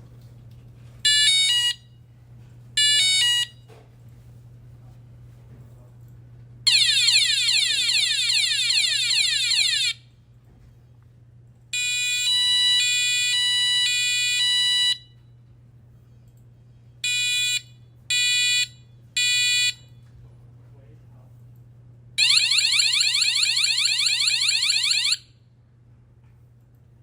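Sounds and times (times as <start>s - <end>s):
two-tone electronic alarm: 1.1s - 1.9s, 2.8s - 3.6s, 6.7s - 10.0s, 11.8s - 15.1s, 17.0s - 19.9s, 22.2s - 25.3s.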